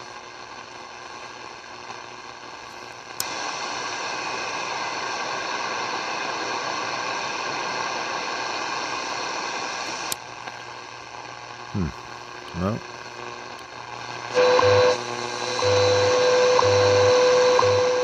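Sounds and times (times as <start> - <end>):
radio static and hiss: 8.2 - 18.0.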